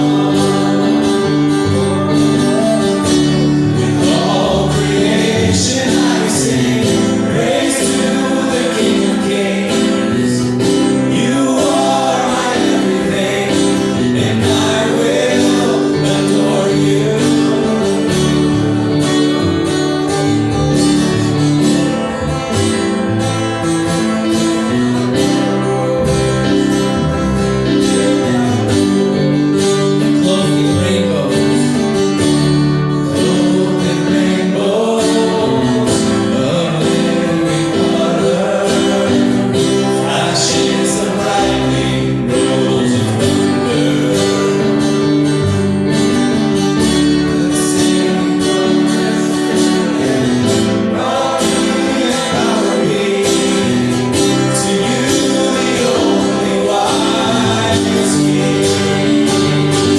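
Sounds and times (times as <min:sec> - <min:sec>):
person singing worship song: 0:00.0 - 0:19.2, 0:33.0 - 0:45.3, 0:47.2 - 0:59.9
acoustic guitar strumming: 0:00.0 - 0:59.9.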